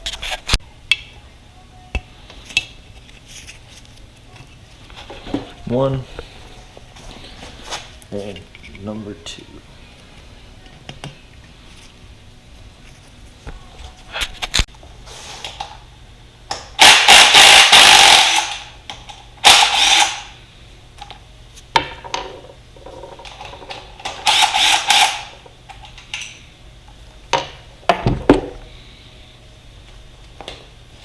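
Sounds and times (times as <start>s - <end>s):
handheld power tool running: 16.8s - 18.6s, 19.4s - 20.3s, 24.1s - 25.3s.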